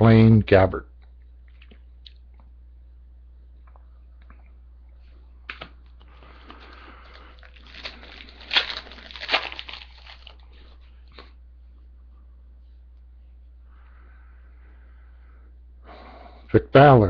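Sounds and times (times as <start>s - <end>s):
foil wrapper tearing and crinkling: 6.6s - 10.5s.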